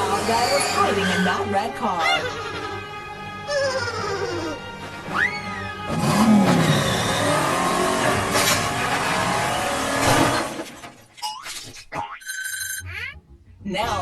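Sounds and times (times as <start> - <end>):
music: 0.0 - 10.3, 12.8 - 14.0
car engine revving: 5.9 - 10.8, 12.8 - 14.0
cartoon whistle: 12.2 - 13.4.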